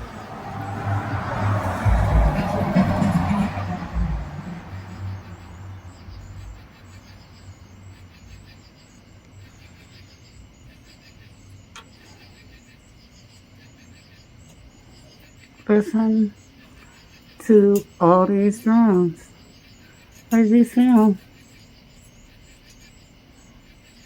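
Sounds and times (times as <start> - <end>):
low vehicle hum: 0.0 - 8.5
faint high chirping: 0.0 - 24.0.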